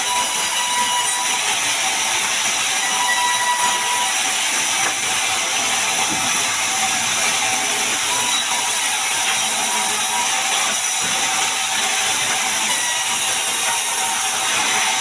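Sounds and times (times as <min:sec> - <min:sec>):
band saw cutting log: 0:00.0 - 0:15.0.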